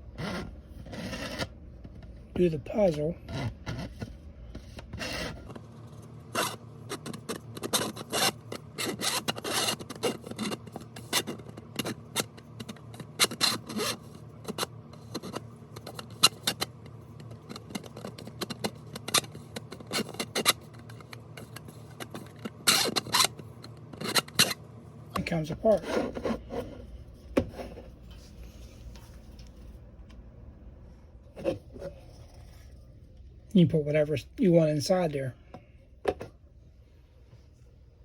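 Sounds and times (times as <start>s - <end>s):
plastic parts scraping and clicking: 0.2s - 30.2s.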